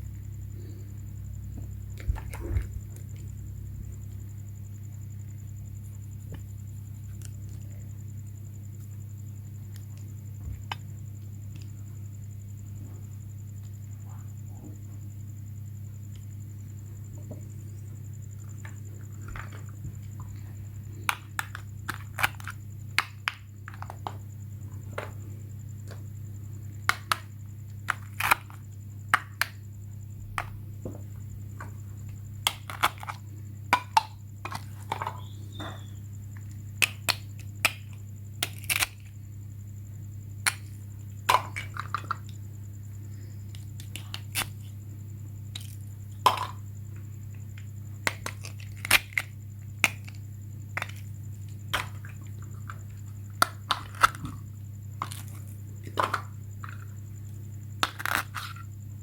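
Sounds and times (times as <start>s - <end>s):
steady low hum: 0.0s - 59.0s
faint high whine: 29.6s - 36.7s.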